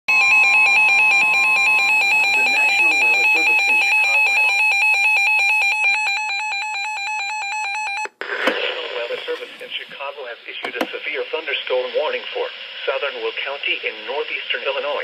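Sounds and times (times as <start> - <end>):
two-tone electronic alarm: 0.1 - 8.1.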